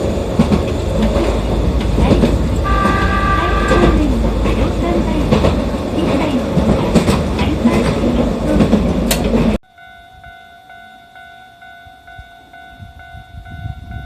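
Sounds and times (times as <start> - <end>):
train wheels clattering over rail joints: 0.0 - 9.6
level-crossing alarm ringing: 2.6 - 4.2, 9.6 - 14.0.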